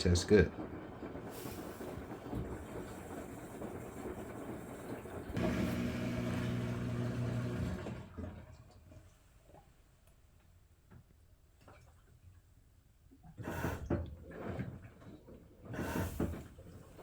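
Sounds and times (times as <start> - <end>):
washing machine washing: 0.0 - 9.6, 13.2 - 17.0
washing machine motor hum: 0.7 - 8.6.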